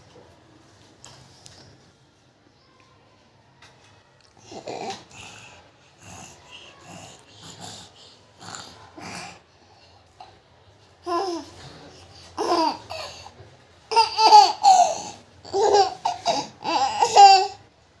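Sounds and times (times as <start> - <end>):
baby babbling and laughing: 11.0 - 11.6, 12.4 - 13.3, 13.9 - 17.6.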